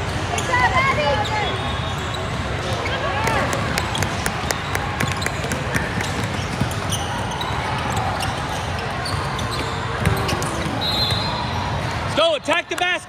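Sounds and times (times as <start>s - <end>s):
hubbub in gym: 0.0s - 13.0s
basketball bouncing on gym floor: 2.6s - 7.1s.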